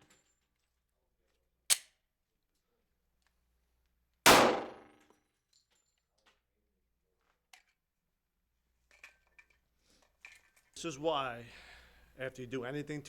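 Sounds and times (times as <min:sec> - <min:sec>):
pistol shot: 0:04.3 - 0:05.0.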